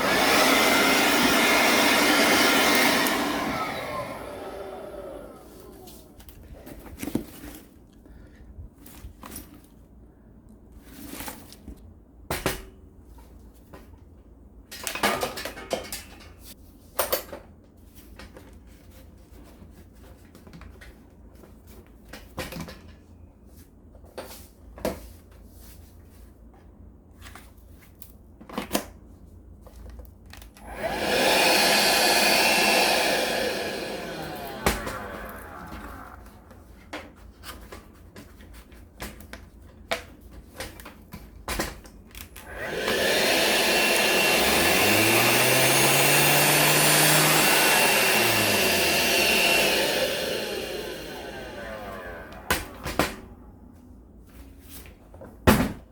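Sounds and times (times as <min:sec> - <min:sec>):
heat gun blowing: 0:00.0 - 0:06.0, 0:30.6 - 0:36.6, 0:42.4 - 0:53.2.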